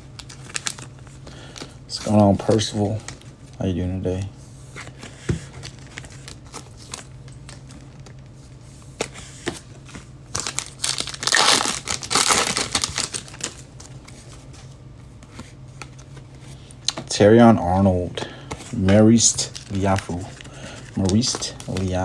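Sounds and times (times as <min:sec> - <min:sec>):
plastic packaging tearing and crinkling: 0:00.1 - 0:03.2, 0:10.3 - 0:14.0, 0:19.2 - 0:22.0.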